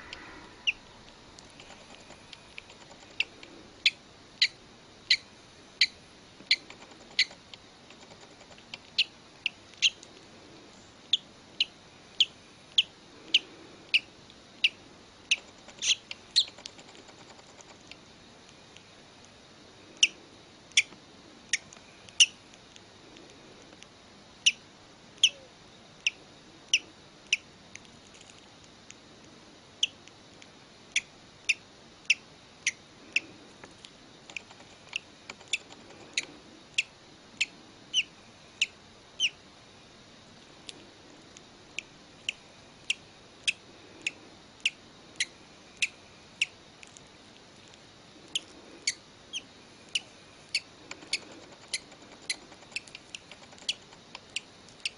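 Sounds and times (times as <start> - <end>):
bird chick peeping: 0.0 - 10.1, 11.1 - 17.7, 20.0 - 20.9, 21.5 - 22.4, 24.4 - 24.6, 25.2 - 27.5, 30.9 - 33.4, 34.3 - 39.4, 42.2 - 46.6, 48.3 - 54.9.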